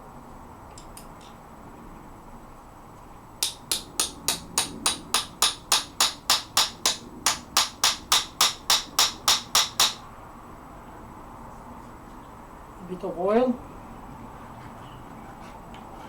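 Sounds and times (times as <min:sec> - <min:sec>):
hammer tapping metal wedge: 0:03.4 - 0:10.0.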